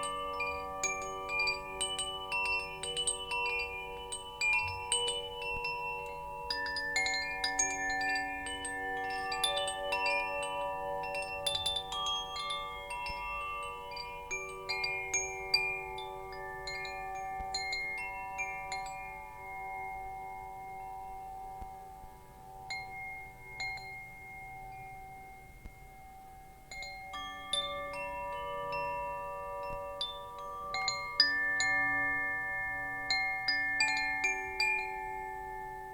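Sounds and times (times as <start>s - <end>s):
wind chimes ringing: 0.0s - 35.9s.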